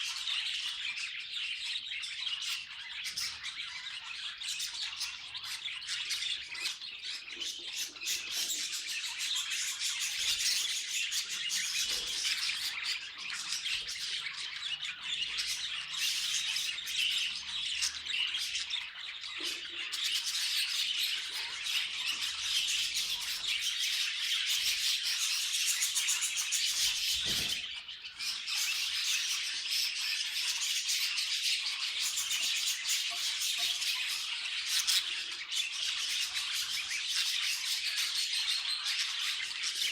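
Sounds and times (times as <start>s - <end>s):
budgerigars chattering and chirping: 0.0s - 39.9s.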